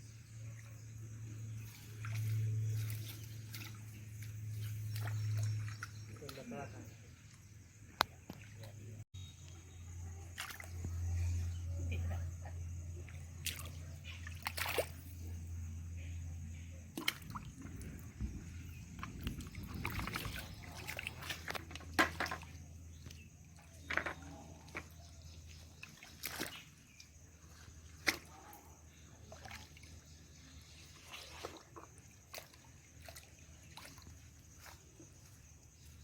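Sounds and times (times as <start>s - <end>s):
steady low hum: 0.0s - 25.5s
water sloshing and trickling: 0.0s - 36.0s
water splashes: 1.4s - 9.0s, 10.3s - 11.0s, 13.0s - 15.4s, 16.9s - 36.0s.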